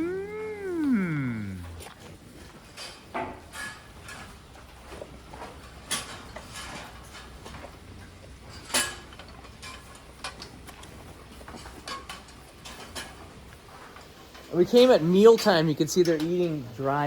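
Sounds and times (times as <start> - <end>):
low steady hum: 0.0 - 2.7
cows eating hay: 1.6 - 16.2.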